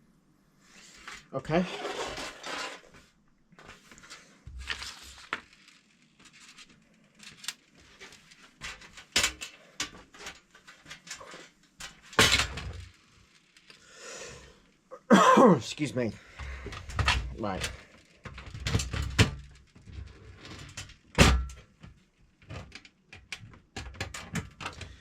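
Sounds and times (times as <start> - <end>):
clicks and knocks of parts: 7.2 - 13.8, 20.6 - 25.0.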